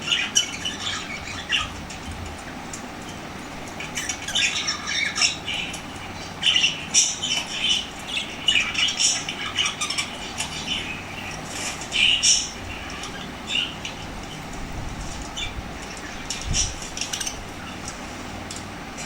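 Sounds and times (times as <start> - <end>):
small parrots squawking: 0.0 - 2.0, 3.8 - 14.4.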